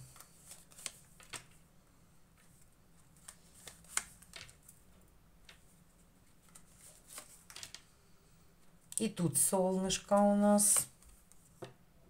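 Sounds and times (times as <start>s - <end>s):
cards snapping and slapping on table: 3.2s - 4.6s.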